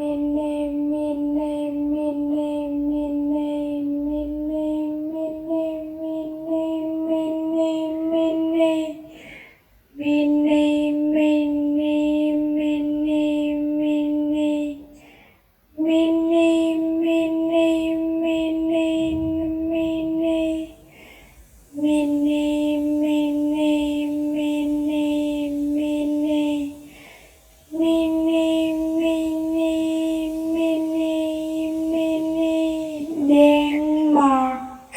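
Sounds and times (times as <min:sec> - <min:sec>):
voice chanting on one pitch: 0:15.8 - 0:34.9.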